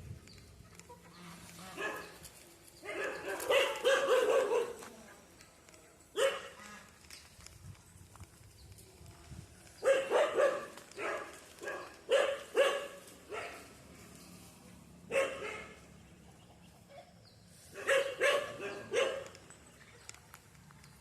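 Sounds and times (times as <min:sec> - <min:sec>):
dog barking: 0:01.8 - 0:02.1, 0:02.8 - 0:04.8, 0:06.2 - 0:06.6, 0:09.8 - 0:13.7, 0:15.1 - 0:15.8, 0:17.8 - 0:19.3.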